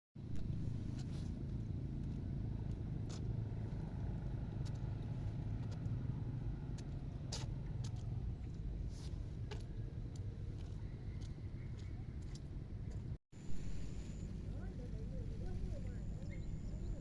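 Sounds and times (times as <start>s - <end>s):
steady low rumble: 0.2s - 17.0s.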